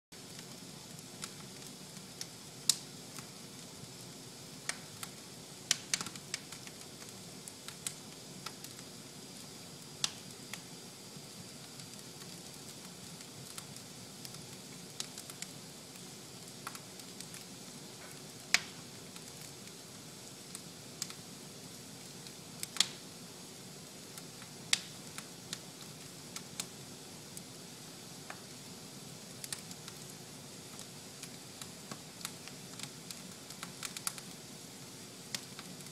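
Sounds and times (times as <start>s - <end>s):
fire crackling and popping: 0.2s - 35.9s
low hiss of fire: 0.2s - 35.9s.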